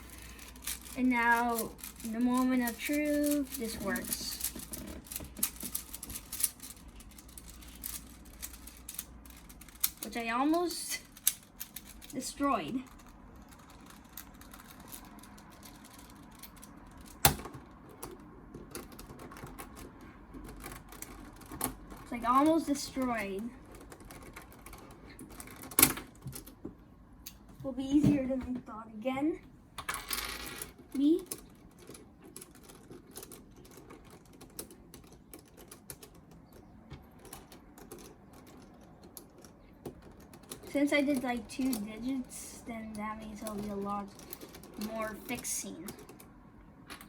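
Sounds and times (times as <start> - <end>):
puzzle cube clicking: 0.0 - 12.2.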